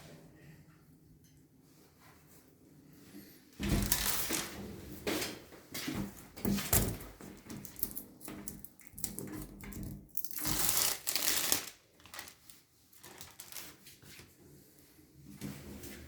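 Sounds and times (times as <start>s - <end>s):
rustling and clicking of handled things: 3.6s - 4.6s, 5.2s - 14.3s.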